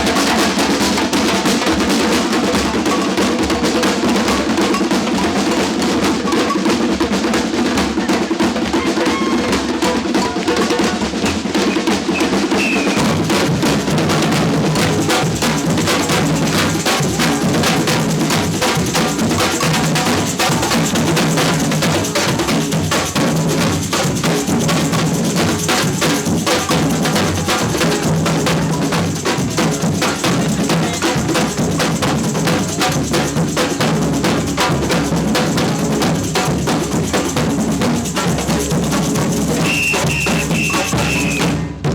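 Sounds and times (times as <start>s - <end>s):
snare drums: 0.0s - 41.9s
bass drums: 11.2s - 41.9s.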